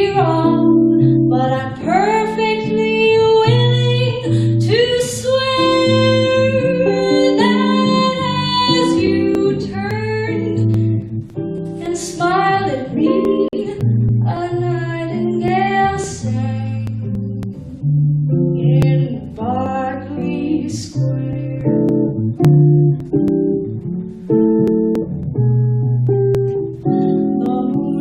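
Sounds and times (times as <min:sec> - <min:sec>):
woman singing a jazz ballad: 0:00.0 - 0:11.0, 0:11.8 - 0:17.1, 0:18.6 - 0:22.1, 0:27.2 - 0:28.0
plucked guitar chords and bass: 0:00.0 - 0:28.0.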